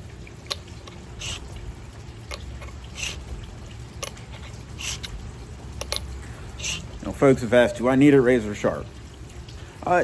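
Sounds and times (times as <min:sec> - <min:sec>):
blade scraping on sharpening stone: 0:01.2 - 0:01.5, 0:04.0 - 0:05.2.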